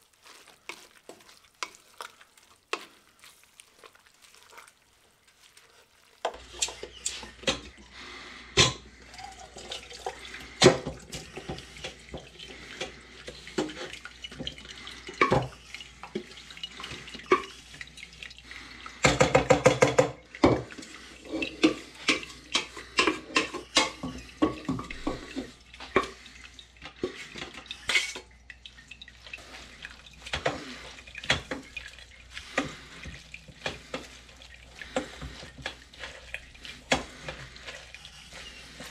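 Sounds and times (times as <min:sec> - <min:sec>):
dishes and utensils clinking: 0:19.0 - 0:26.2.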